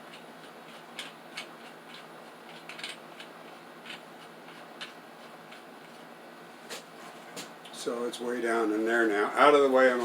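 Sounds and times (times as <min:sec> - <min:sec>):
steady background hiss: 0:06.0 - 0:10.0.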